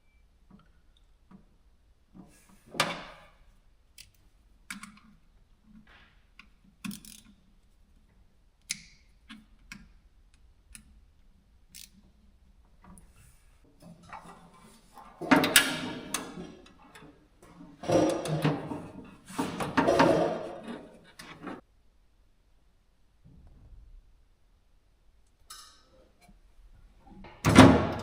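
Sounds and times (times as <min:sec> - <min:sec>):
small parts clicking and knocking: 0:03.9 - 0:11.0, 0:11.6 - 0:12.2.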